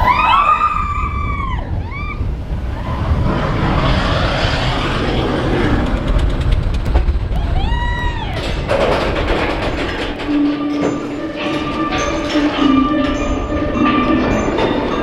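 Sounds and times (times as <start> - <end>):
riders screaming: 0.0 - 3.9, 7.4 - 8.6
roller coaster rushing past: 0.0 - 15.0
rattling: 8.3 - 15.0.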